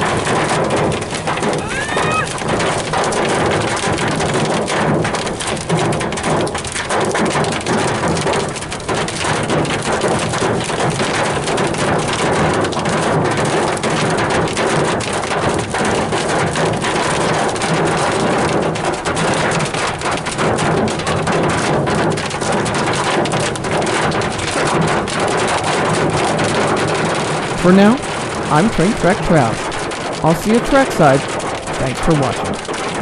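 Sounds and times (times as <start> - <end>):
heavy rain hitting a car: 0.0 - 33.0.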